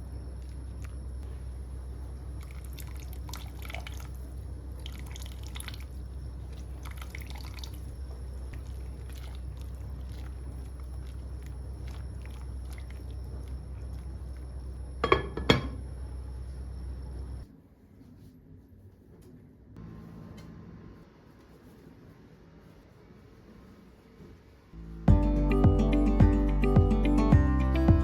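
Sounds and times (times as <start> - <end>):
steady low hum: 0.0 - 28.0
liquid dripping and trickling: 2.4 - 14.5.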